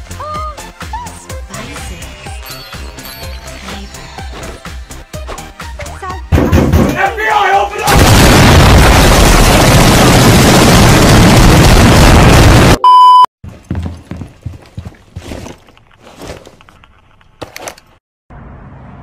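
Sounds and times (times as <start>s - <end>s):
short censor beep: 12.8s - 13.3s.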